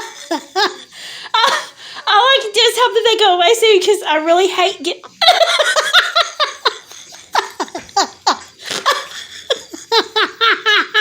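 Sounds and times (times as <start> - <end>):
woman laughing: 0.0 - 1.8, 5.0 - 11.0.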